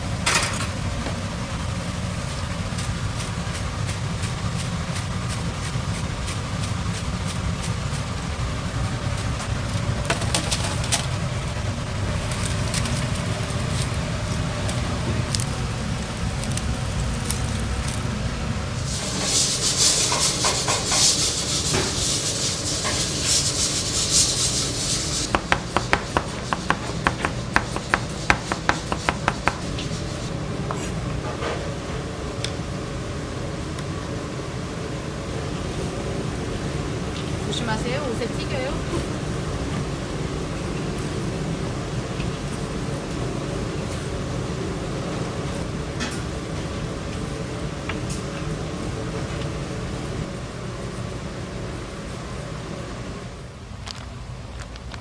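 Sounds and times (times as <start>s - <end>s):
food sizzling: 0.8s - 10.5s, 11.8s - 30.4s
sharp knocks: 25.3s - 29.9s.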